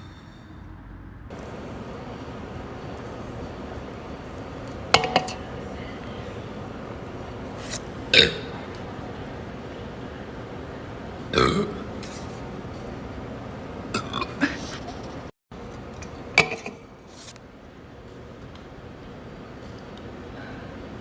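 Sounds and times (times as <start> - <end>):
person belching: 8.1 - 8.7, 11.3 - 11.9, 13.9 - 14.6.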